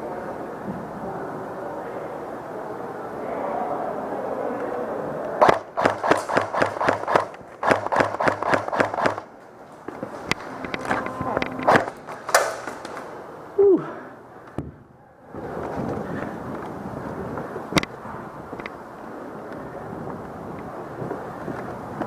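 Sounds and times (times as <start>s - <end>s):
airsoft gun bursts: 5.4s - 9.3s, 11.7s - 12.9s
single shots or bb impacts: 5.4s - 9.3s.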